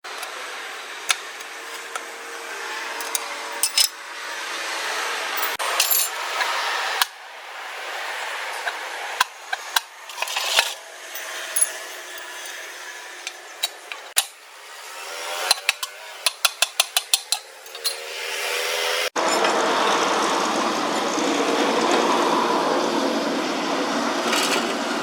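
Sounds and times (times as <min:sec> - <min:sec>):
metal tools clinking: 0:02.9 - 0:04.0, 0:05.4 - 0:06.6, 0:08.6 - 0:14.3, 0:15.5 - 0:18.6.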